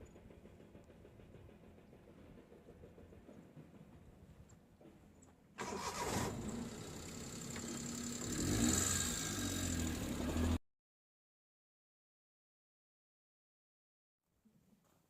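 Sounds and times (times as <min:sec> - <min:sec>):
engine running: 0:05.6 - 0:10.6.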